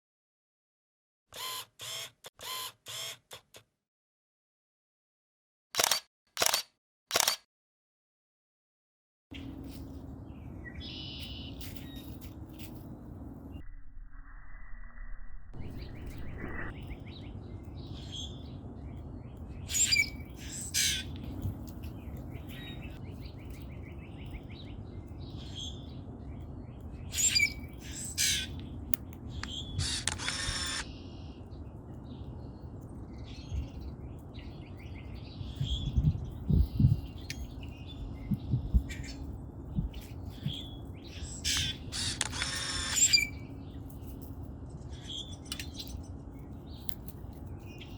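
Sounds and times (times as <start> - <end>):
low background rumble: 9.4 - 47.9
grackles calling: 19.7 - 21.1, 29.4 - 30.9, 41.2 - 43.4.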